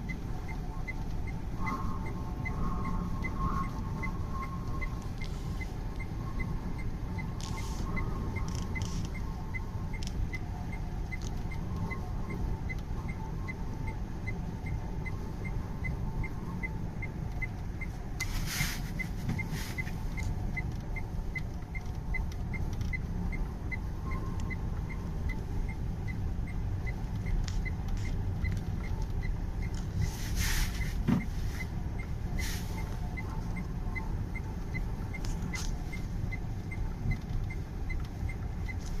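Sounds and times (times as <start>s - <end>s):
vehicle rumbling on highway: 0.0s - 39.0s
faint ticking: 30.8s - 39.0s.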